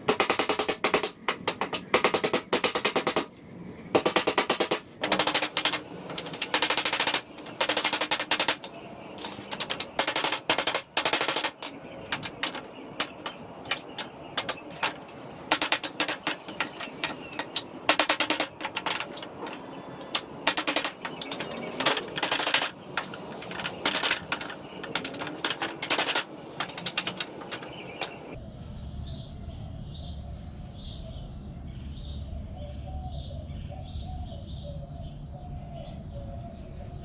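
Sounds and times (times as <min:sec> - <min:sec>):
rapid impacts on pallet wood: 0:00.0 - 0:03.4, 0:04.0 - 0:28.4.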